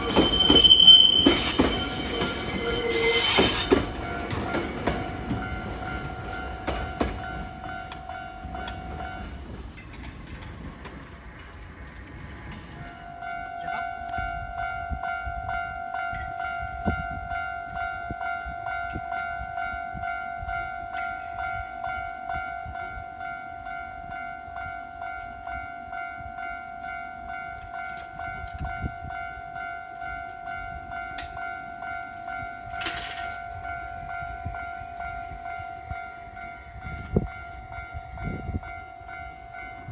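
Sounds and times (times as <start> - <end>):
level-crossing bell dinging: 0.0 - 9.3
train rumble: 0.0 - 19.7, 24.4 - 39.9.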